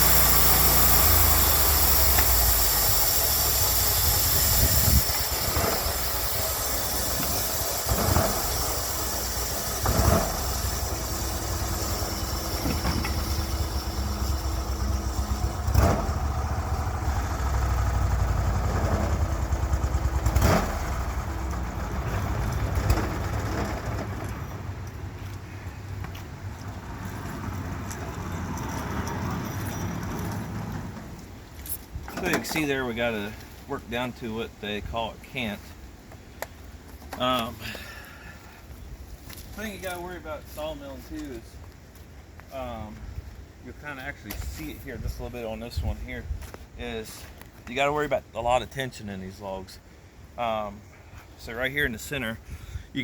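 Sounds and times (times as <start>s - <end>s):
sawmill engine running: 0.0s - 25.4s.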